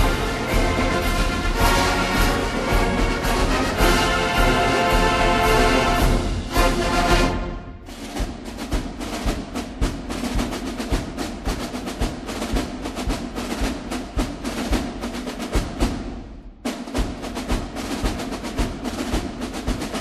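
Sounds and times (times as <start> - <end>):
orchestral chord: 0.0 - 7.8
fast drum percussion pattern: 0.0 - 20.0.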